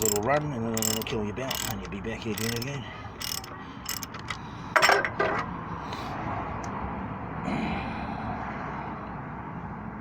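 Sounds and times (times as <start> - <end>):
hand tool clacks: 0.0 - 5.2.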